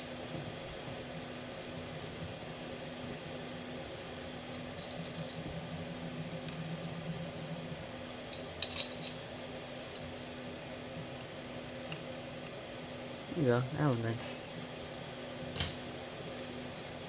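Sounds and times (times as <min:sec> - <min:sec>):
steady low hum: 0:00.0 - 0:17.0
metallic clinks of hand tools: 0:13.9 - 0:14.4.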